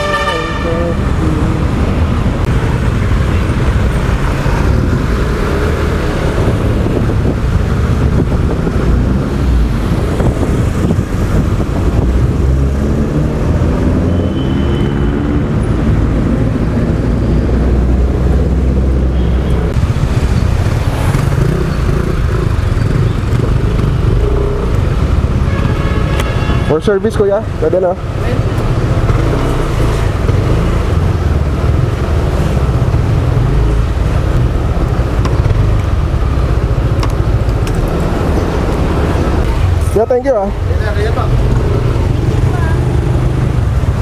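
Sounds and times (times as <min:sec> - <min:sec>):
road and traffic noise: 0:00.0 - 0:44.0
wind on microphone: 0:00.8 - 0:14.0.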